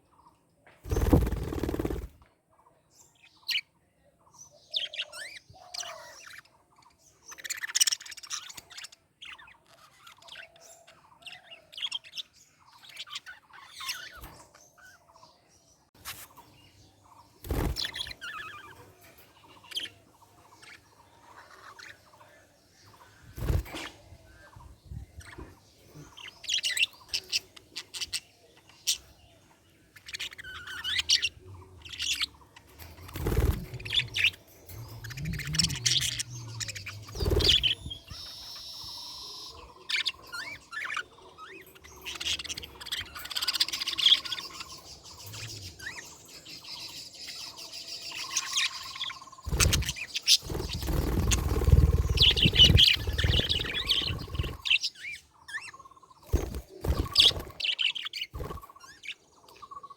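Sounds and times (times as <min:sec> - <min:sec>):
budgerigars chirping: 0:29.9 - 0:59.9.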